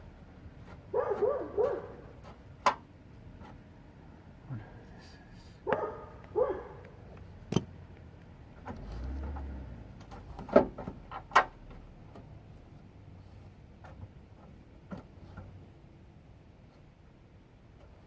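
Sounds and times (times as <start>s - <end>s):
dog barking: 0.9s - 2.1s, 5.6s - 7.0s.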